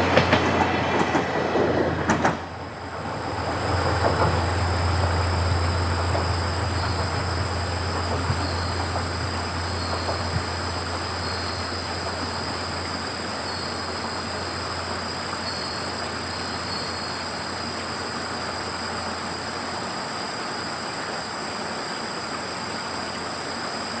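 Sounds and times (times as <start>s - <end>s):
low hum: 2.4s - 14.0s
insects trilling: 2.5s - 24.0s.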